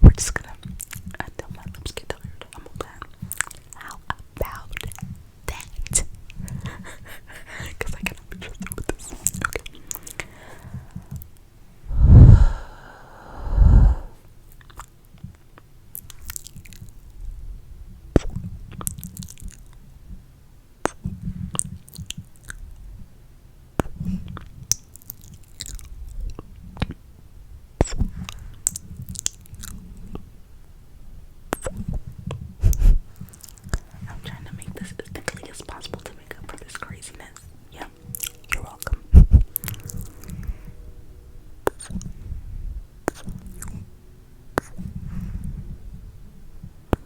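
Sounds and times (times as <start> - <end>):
loud low bursts: 11.8 - 14.2
wet mouth clicks and smacks: 31.5 - 32.0, 41.7 - 42.1, 43.1 - 43.8, 44.6 - 44.9.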